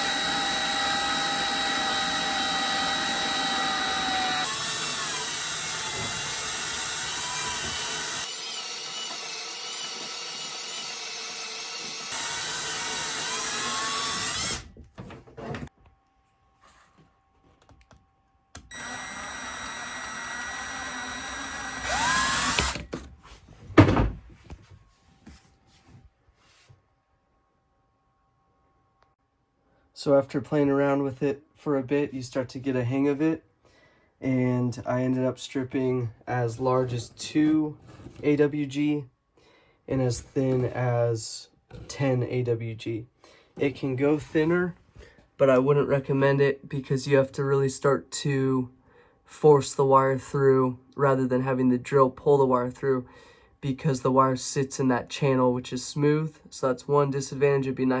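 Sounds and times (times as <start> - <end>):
power drill whining: 0.0 - 14.7, 18.5 - 23.1.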